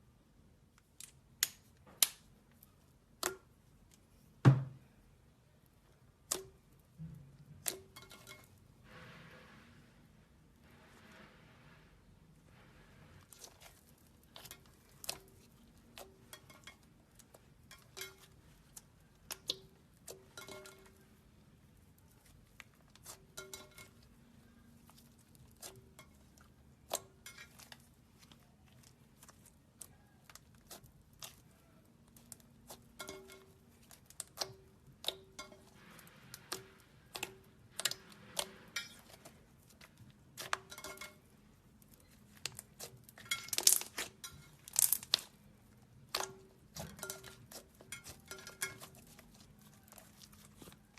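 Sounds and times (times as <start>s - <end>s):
slime clicking and popping: 42.4s - 45.4s.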